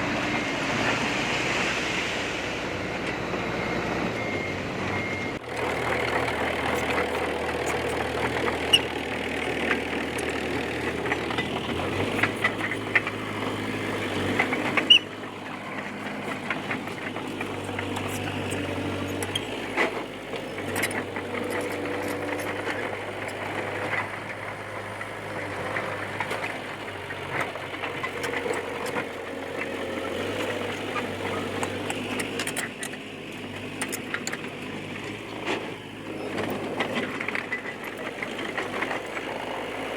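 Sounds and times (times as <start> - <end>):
bulldozer diesel engine running: 0.0 - 39.9
metallic clanks and clicks: 30.4 - 39.3.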